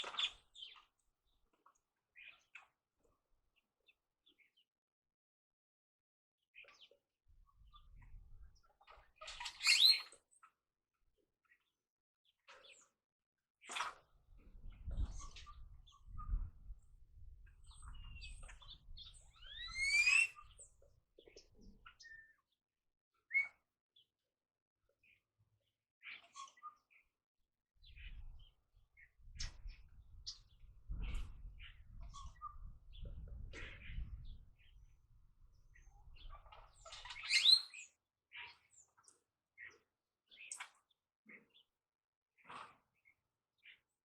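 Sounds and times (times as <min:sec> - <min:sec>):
birds chirping and calling: 0:00.0 - 0:01.4, 0:07.6 - 0:10.5, 0:13.7 - 0:22.4, 0:26.0 - 0:27.0, 0:27.8 - 0:41.6
loud rising whistled bird call: 0:09.6 - 0:10.0, 0:19.4 - 0:20.5, 0:37.2 - 0:37.8.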